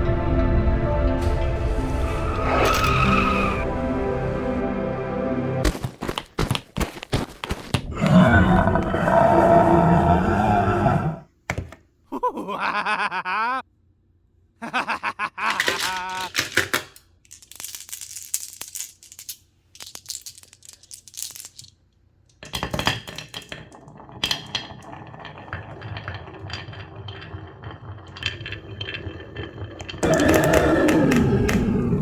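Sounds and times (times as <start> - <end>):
marbles clicking together: 15.7 - 21.8
marbles rolling on a marble run: 22.6 - 31.6.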